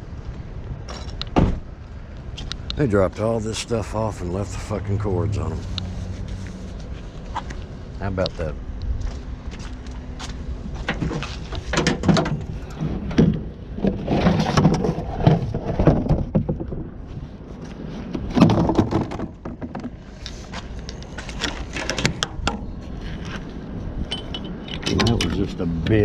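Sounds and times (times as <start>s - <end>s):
low rumble: 1.6s - 11.7s.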